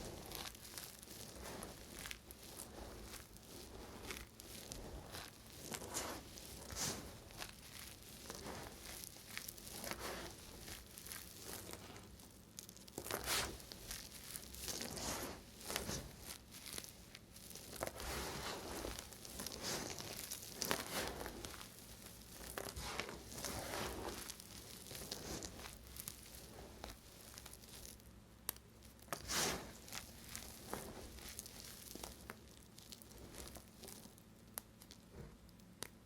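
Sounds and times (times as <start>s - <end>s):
knife cutting dry soap: 0.0s - 34.1s.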